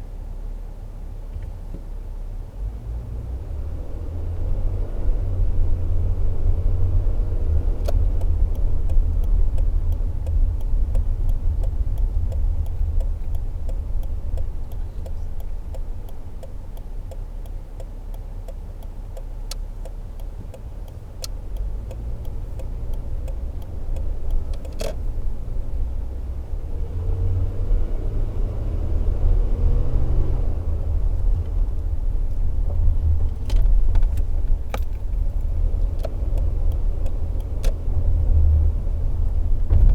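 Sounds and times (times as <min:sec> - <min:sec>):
engine and road rumble: 0:00.0 - 0:39.9
light clicks: 0:31.1 - 0:39.4.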